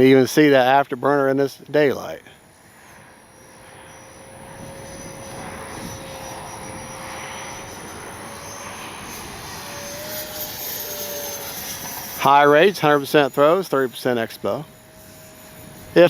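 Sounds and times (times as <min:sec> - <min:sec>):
electric ducted fan jet whine: 0:00.0 - 0:16.0.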